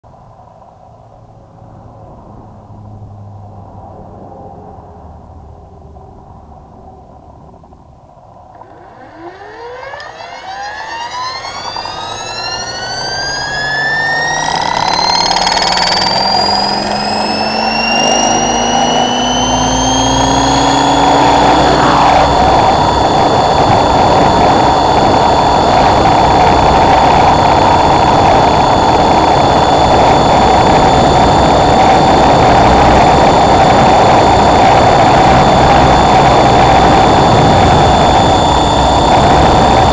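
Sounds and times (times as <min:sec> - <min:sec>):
electric helicopter motor whine: 0:08.5 - 0:39.9.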